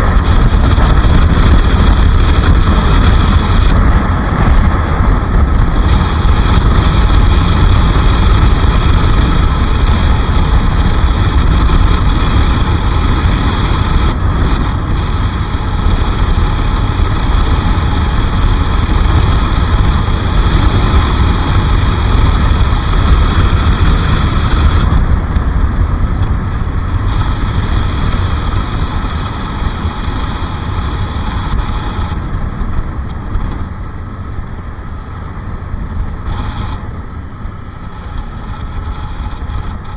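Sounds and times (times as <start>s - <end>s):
motorcycle engine running: 0.0s - 39.9s
wind rumble on microphone: 0.0s - 39.9s.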